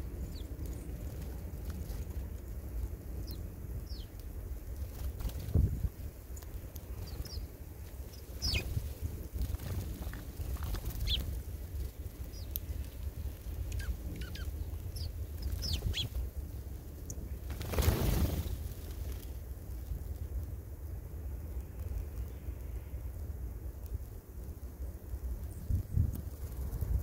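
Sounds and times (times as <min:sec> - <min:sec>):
birds chirping: 0:00.0 - 0:02.0, 0:03.2 - 0:04.2, 0:06.3 - 0:08.8, 0:09.4 - 0:18.5
steady low rumble: 0:00.0 - 0:27.0.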